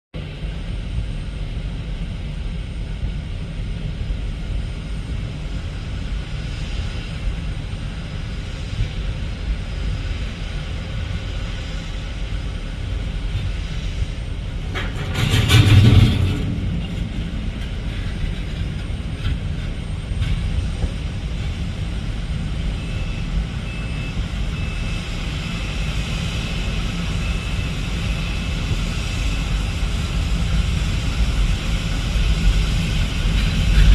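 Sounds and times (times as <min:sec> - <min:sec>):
jet aircraft rumble: 0:00.2 - 0:33.9
loud jet rush: 0:12.4 - 0:22.6.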